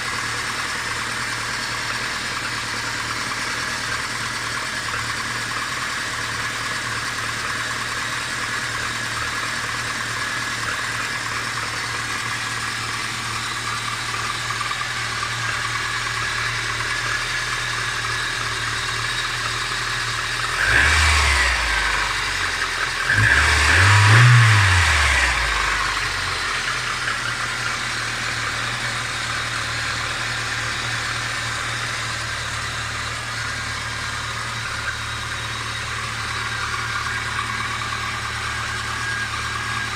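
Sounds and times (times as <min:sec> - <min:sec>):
car engine idling with knock: 0:00.0 - 0:39.9
car engine revving: 0:11.6 - 0:39.9.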